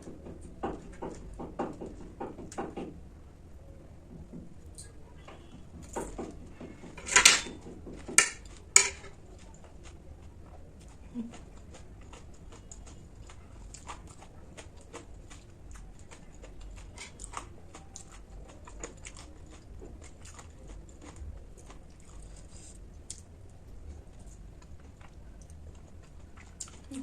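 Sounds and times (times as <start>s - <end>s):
chewing crunchy food: 7.6s - 27.0s.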